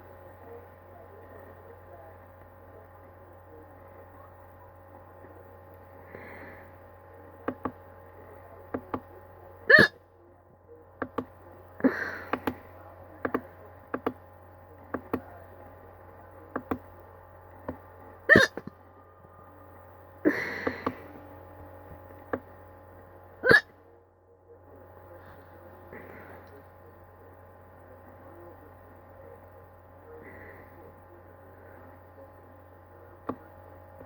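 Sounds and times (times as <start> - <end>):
person hiccuping: 9.7 - 10.0, 18.3 - 18.7, 23.4 - 23.8.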